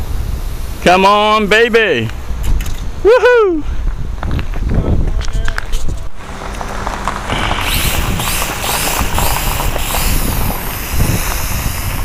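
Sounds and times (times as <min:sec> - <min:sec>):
wind buffeting microphone: 0:02.2 - 0:12.0
quadcopter motors whining: 0:06.1 - 0:12.0.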